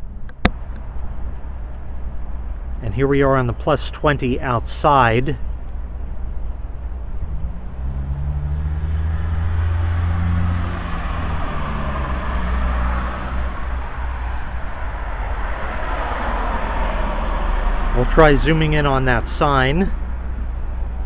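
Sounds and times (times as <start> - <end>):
car engine hum: 0.0 - 21.0
tyres hissing on wet road: 7.8 - 19.8.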